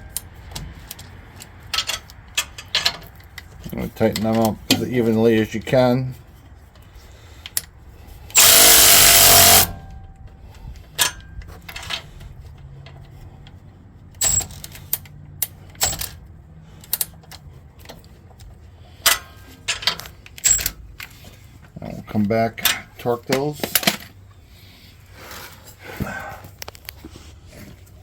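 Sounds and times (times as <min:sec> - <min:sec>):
metallic clinks of wrenches: 0:00.0 - 0:05.6, 0:08.3 - 0:21.6
impact wrench running: 0:08.3 - 0:10.0.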